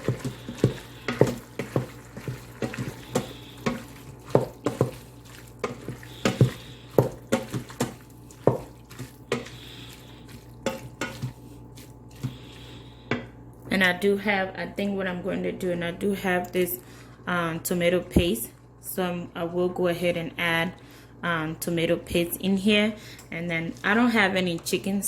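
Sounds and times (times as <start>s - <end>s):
utensil scraping metal pot: 0.0s - 13.2s.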